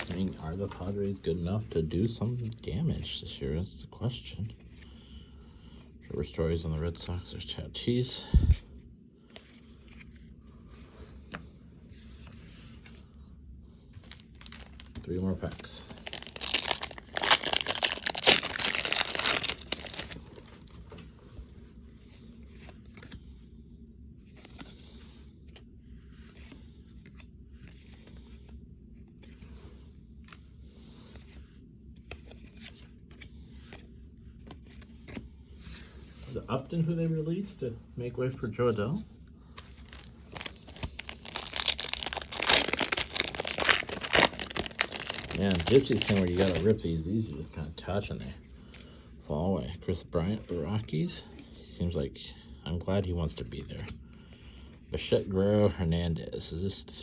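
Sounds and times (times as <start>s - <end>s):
cards rustling and clicking: 0.0s - 3.0s, 9.2s - 13.0s, 14.0s - 23.4s, 24.2s - 36.3s, 39.5s - 47.3s
foil wrapper tearing and crinkling: 14.1s - 20.5s, 39.6s - 46.8s.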